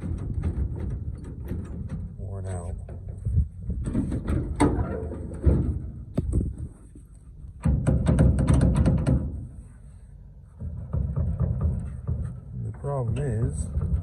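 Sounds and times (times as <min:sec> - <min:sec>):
tailgate clunking and rattling: 0:03.8 - 0:06.0.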